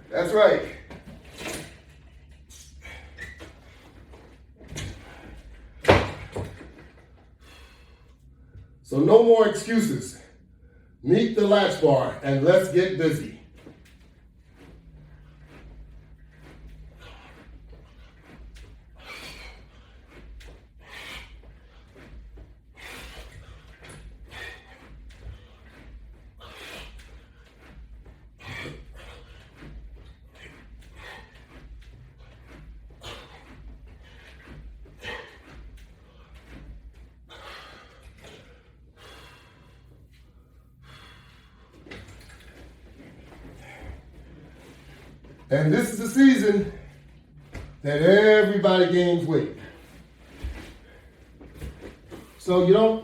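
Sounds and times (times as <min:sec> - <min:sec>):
person breathing hard: 0:07.3 - 0:08.8, 0:15.0 - 0:42.2.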